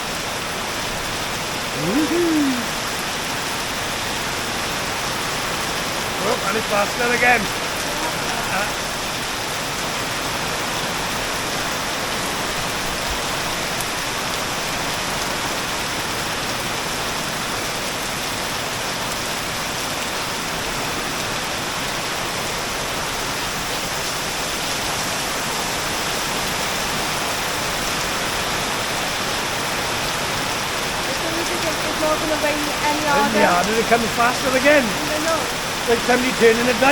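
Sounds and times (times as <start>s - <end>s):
heavy rain hammering: 0.0s - 36.9s.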